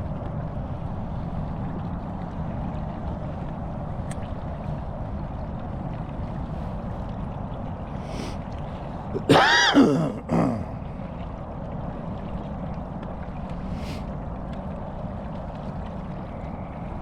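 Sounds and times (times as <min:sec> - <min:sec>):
loud voice-like call: 0:09.2 - 0:10.8.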